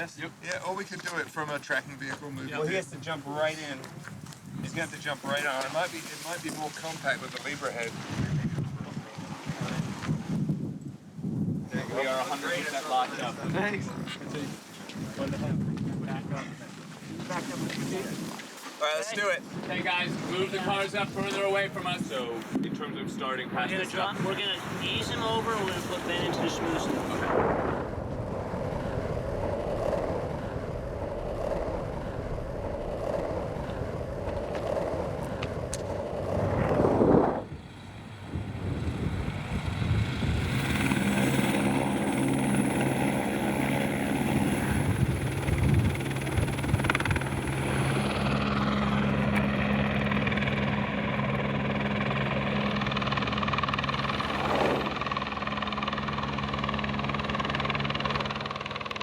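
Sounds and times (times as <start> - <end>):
road and wind rumble: 19.6 - 59.0.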